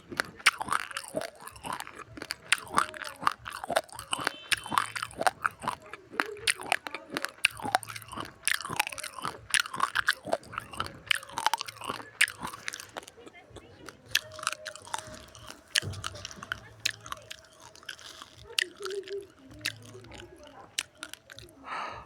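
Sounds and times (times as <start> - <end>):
chewing crunchy rice grains: 0.0 - 21.9.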